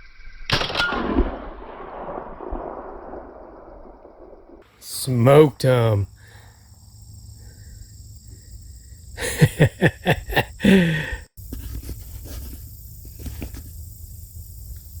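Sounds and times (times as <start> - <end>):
steady low rumble: 1.1 - 5.6
person's short breathy vocal bursts: 10.6 - 11.3.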